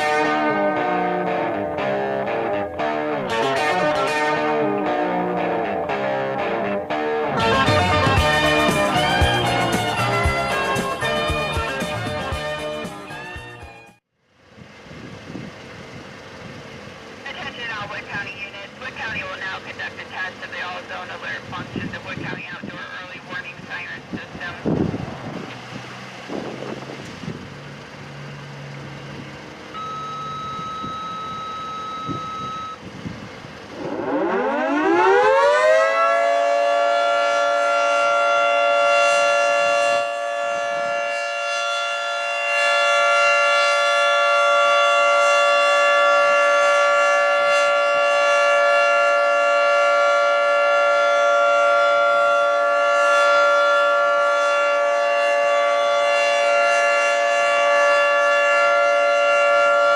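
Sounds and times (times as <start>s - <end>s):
rotating warning siren: 0.0s - 14.0s, 17.4s - 59.9s.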